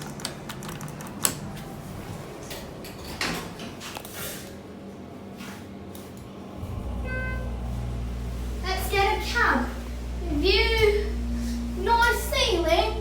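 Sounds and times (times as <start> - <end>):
elevator doors sliding shut: 6.6 - 13.0.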